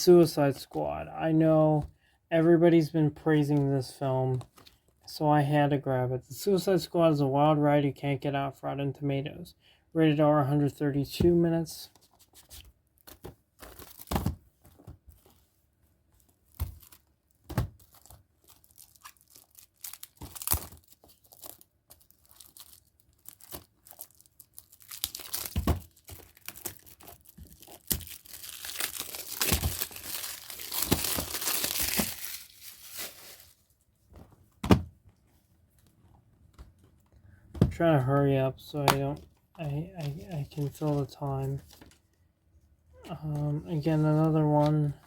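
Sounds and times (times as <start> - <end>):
plastic shrink-wrap crinkling: 17.8 - 33.7.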